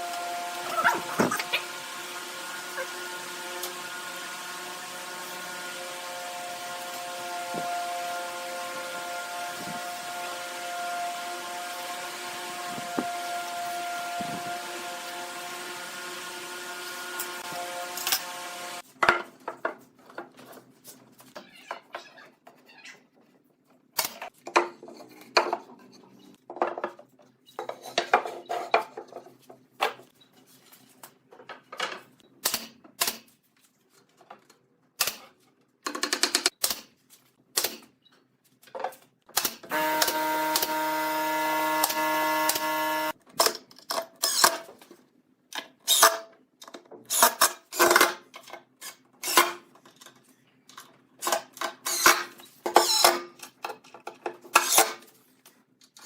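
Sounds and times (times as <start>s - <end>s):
power tool running: 0.0s - 18.8s, 39.7s - 43.2s.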